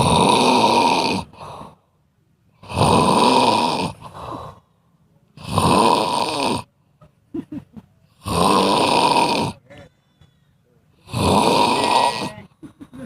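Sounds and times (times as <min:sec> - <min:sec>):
loud snoring: 0:00.0 - 0:01.8, 0:02.6 - 0:04.5, 0:05.4 - 0:06.7, 0:08.2 - 0:09.6, 0:11.0 - 0:12.5.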